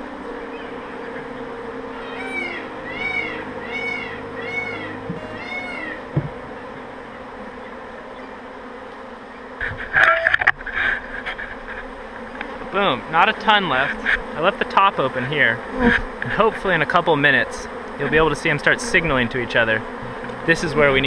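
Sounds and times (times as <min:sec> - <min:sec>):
bee swarm buzzing: 0:00.0 - 0:21.0
short rising-and-falling calls: 0:00.2 - 0:08.3
close buzzing and knocking: 0:04.9 - 0:21.0.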